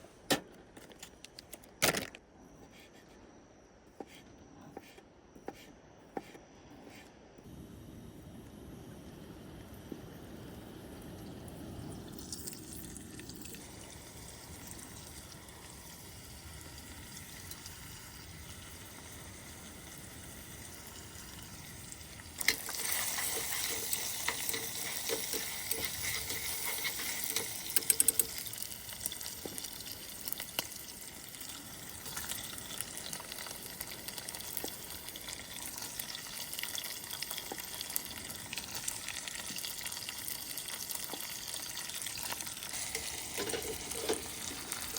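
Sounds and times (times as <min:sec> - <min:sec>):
faint steady hiss: 0:06.2 - 0:44.9
food sizzling in a pan: 0:10.2 - 0:44.9.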